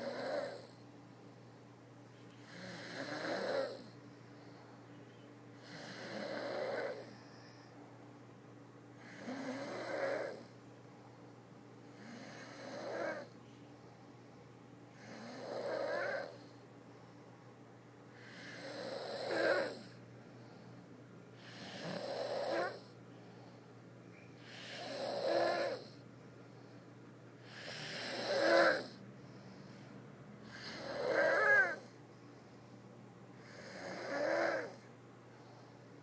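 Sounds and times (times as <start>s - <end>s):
person snoring: 2.5s - 4.0s, 5.6s - 7.2s, 9.0s - 10.5s, 15.0s - 16.4s, 18.2s - 20.0s, 21.4s - 22.9s, 24.4s - 26.0s, 27.4s - 29.0s, 30.5s - 31.9s, 33.4s - 34.9s.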